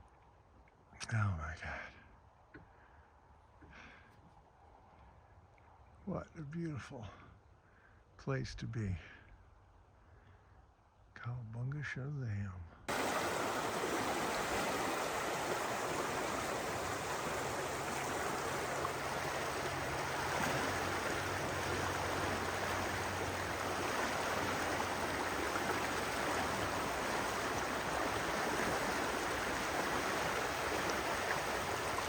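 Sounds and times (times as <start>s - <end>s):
river water rushing: 12.9s - 32.0s.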